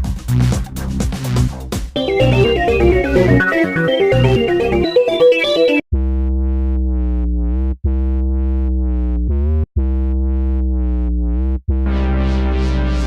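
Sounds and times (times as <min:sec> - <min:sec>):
electronic synthesizer music: 0:02.0 - 0:05.9, 0:11.8 - 0:13.0.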